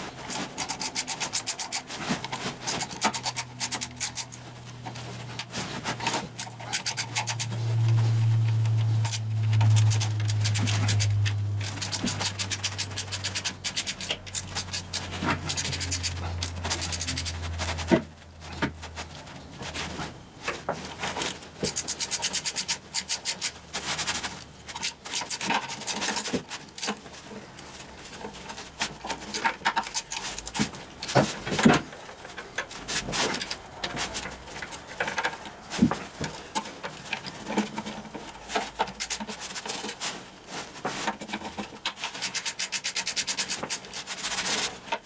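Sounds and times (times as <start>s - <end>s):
low steady hum: 0.0s - 21.6s
ratchet wrench clicking: 2.8s - 4.4s, 9.0s - 17.4s.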